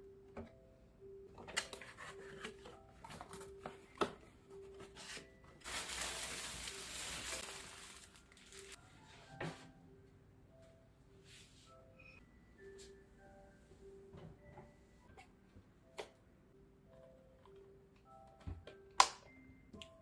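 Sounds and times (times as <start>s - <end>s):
packaging rustling: 4.9s - 8.8s.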